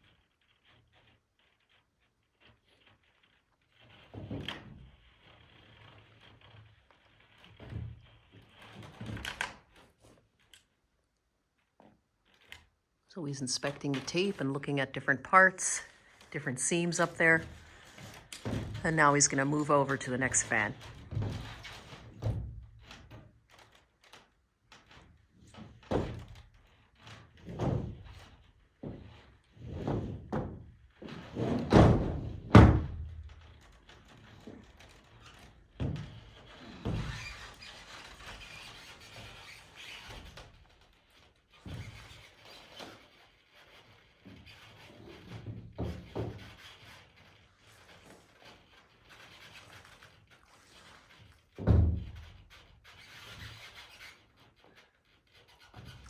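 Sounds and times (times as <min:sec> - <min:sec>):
thumps on greenhouse roof: 0:31.4 - 0:33.2.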